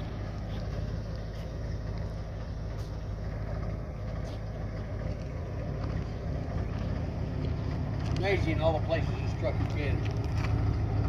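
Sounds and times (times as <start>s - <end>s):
truck engine running: 0.0s - 11.0s.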